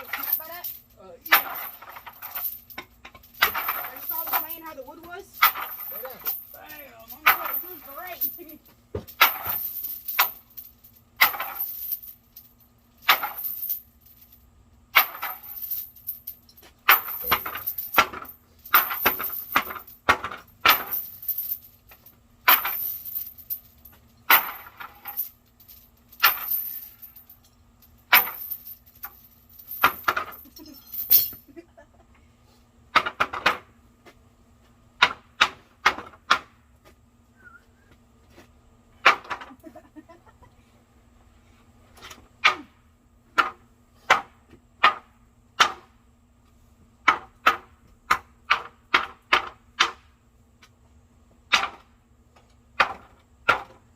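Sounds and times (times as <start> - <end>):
metal tools striking lumber: 2.8 - 6.3, 35.0 - 36.6, 42.4 - 46.0, 47.0 - 50.1, 51.5 - 51.9, 52.8 - 53.9.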